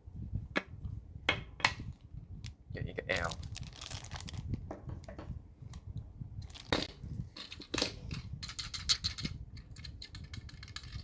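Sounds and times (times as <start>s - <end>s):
plastic packaging crinkling: 3.1s - 4.5s
plastic toy pieces clicking: 7.4s - 11.0s.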